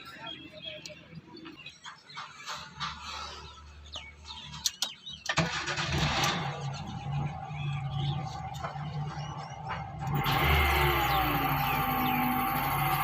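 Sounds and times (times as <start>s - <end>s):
car engine starting and running: 5.3s - 13.0s.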